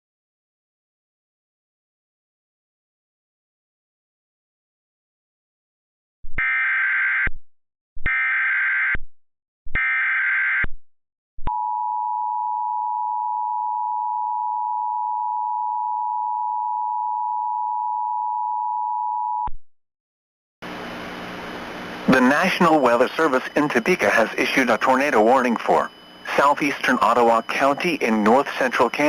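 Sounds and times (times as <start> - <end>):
raspy digital data bursts: 22.1 - 29.0
two-tone attention signal: 22.1 - 29.0.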